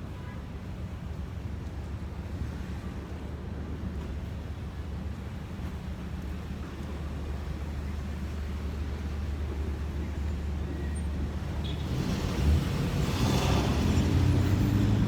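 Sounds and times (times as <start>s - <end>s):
low rumble of road traffic: 0.0s - 15.0s
vehicle passing: 12.1s - 15.0s.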